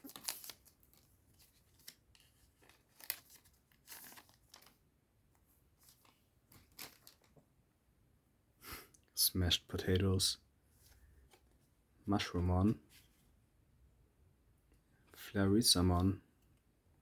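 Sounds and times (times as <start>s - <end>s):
wrapper crinkling and tearing: 0.0s - 4.8s, 5.9s - 7.3s.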